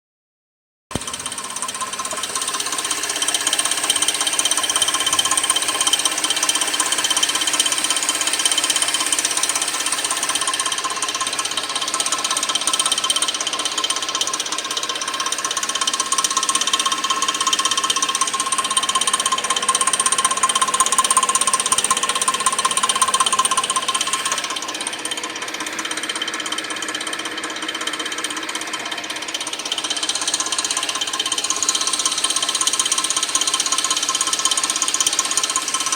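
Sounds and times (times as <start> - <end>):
engine ticking and rattling: 0.9 - 35.9.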